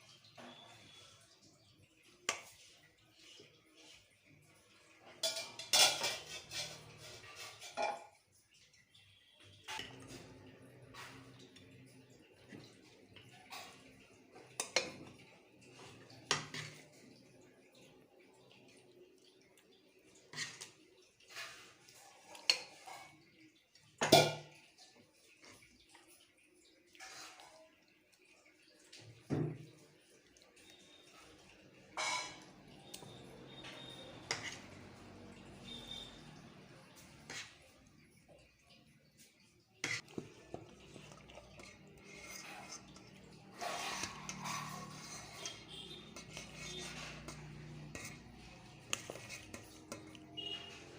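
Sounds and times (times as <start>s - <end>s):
cookware clacking: 5.0s - 8.3s, 24.0s - 24.7s, 31.8s - 38.4s.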